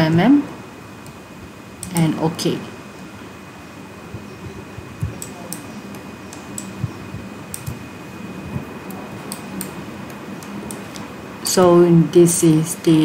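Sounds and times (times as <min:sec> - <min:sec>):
room hum with high whine: 0:00.0 - 0:13.0
computer mouse clicks: 0:05.0 - 0:06.8, 0:07.5 - 0:07.8, 0:08.9 - 0:09.8.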